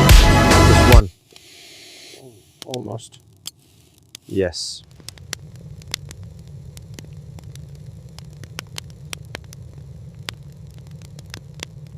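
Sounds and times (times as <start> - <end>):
wood fire crackling: 0.9 - 11.9
sharp pops of fire: 2.4 - 11.9.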